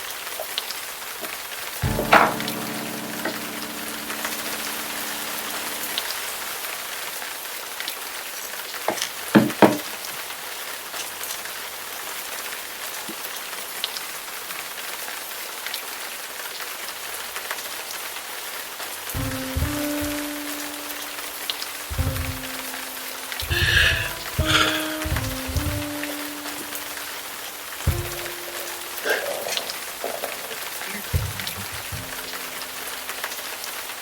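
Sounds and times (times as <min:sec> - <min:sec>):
steady rain: 0:00.0 - 0:34.0
low sustained note: 0:01.8 - 0:06.4, 0:31.2 - 0:33.3
dull thumps: 0:23.4 - 0:26.0, 0:27.9 - 0:28.6, 0:31.2 - 0:32.4.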